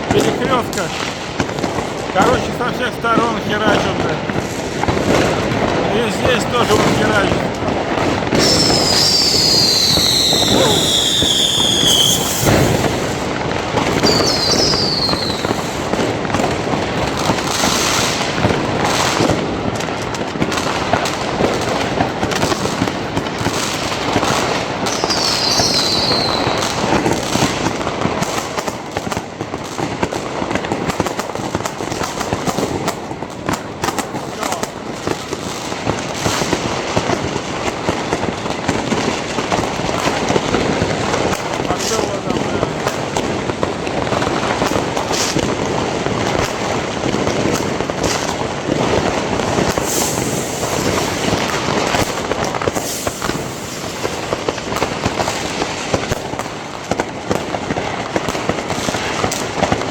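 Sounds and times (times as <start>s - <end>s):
fireworks popping and crackling: 0.0s - 59.9s
whistling firework: 6.6s - 59.9s.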